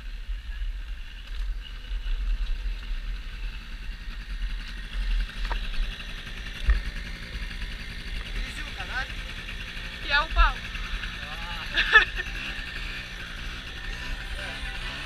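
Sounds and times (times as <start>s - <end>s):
dirt bike engine running: 0.0s - 15.0s.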